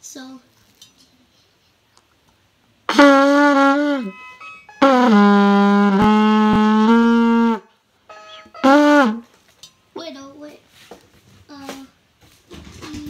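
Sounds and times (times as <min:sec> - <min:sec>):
trumpet playing notes: 0:02.9 - 0:09.4.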